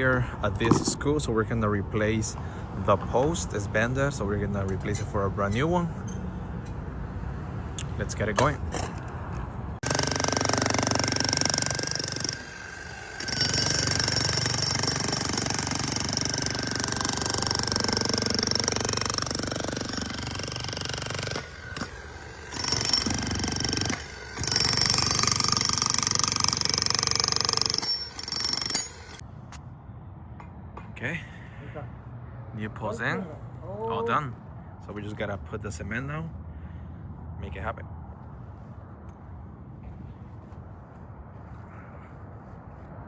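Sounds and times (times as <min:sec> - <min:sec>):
jackhammer running: 0:09.8 - 0:29.2.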